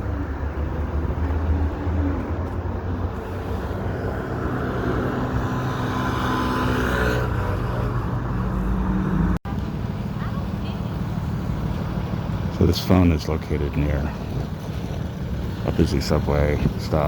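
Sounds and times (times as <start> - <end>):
vehicle engine passing by: 0.0 - 12.6
low rumble of traffic: 0.0 - 17.0.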